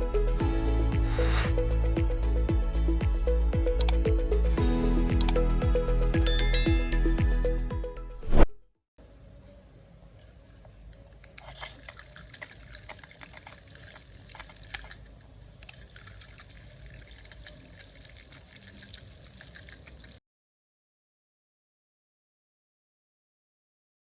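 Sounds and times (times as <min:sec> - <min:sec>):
liquid trickling and dripping: 0:11.4 - 0:20.2.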